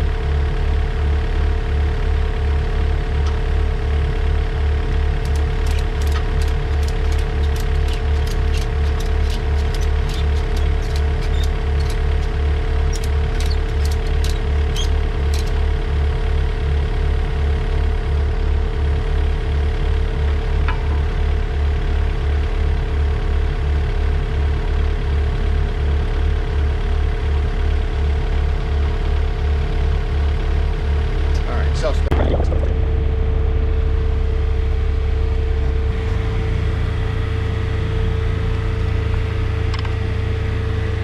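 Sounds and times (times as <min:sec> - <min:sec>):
sharp clicks: 0:05.2 - 0:15.6.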